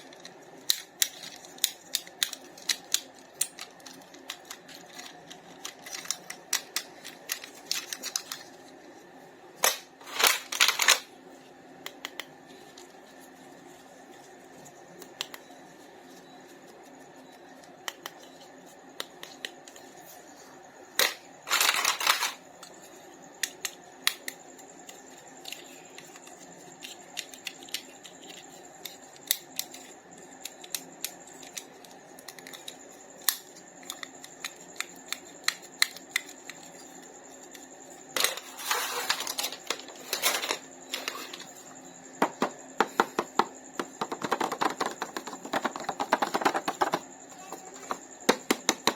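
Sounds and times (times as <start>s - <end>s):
packaging clicks and taps: 42.3s - 48.9s.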